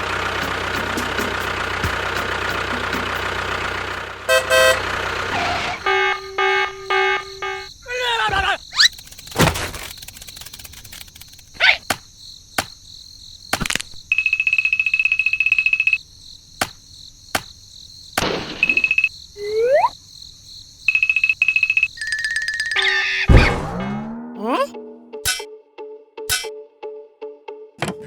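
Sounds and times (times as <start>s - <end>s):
insect-like chirring: 6.9s - 23.3s
sharp clicks: 8.8s - 12.8s, 17.4s - 17.6s
pulsing high electronic beep: 18.6s - 19.9s.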